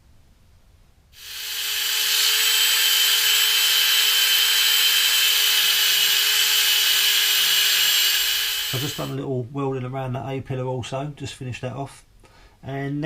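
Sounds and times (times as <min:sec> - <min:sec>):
angle grinder grinding metal: 0:01.2 - 0:09.2.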